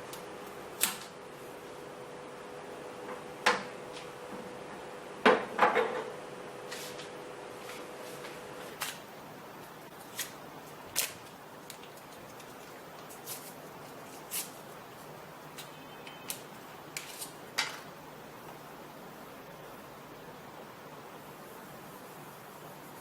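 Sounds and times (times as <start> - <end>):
faint steady hiss: 6.5 - 23.0.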